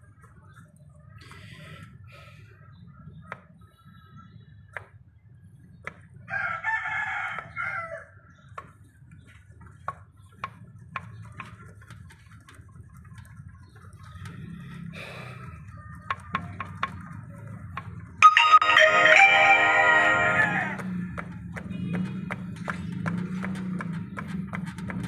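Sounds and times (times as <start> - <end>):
rooster crowing: 6.3 - 8.1.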